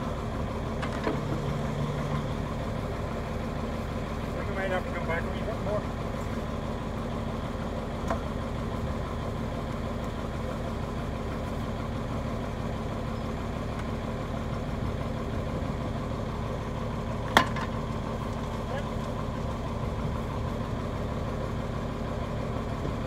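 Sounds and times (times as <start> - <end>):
engine idling low drone: 0.0 - 23.0.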